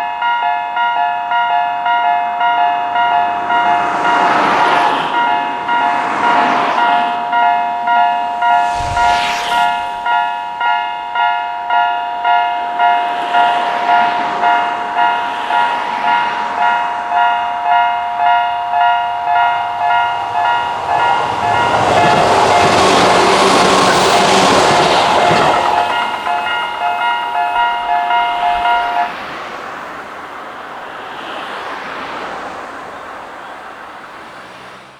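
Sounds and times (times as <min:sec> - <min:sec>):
passing train: 0:00.0 - 0:34.9
level crossing alarm dinging: 0:10.1 - 0:29.2.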